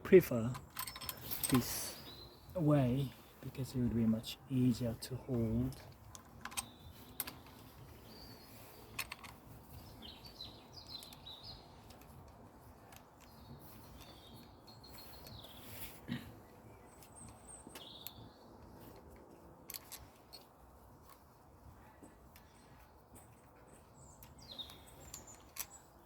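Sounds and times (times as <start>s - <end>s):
birds chirping faintly: 0.0s - 26.0s.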